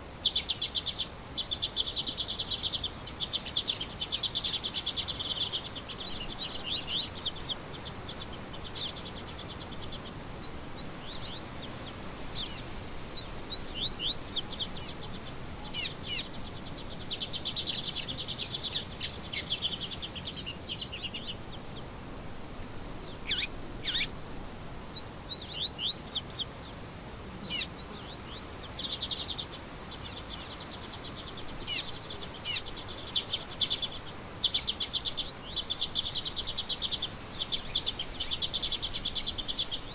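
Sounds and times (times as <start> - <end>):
songbirds chirping and whistling: 0.0 - 21.9, 23.0 - 24.2, 24.9 - 26.8, 27.4 - 39.9
buzzy bird trills: 10.8 - 21.7, 23.0 - 24.1, 27.4 - 39.9.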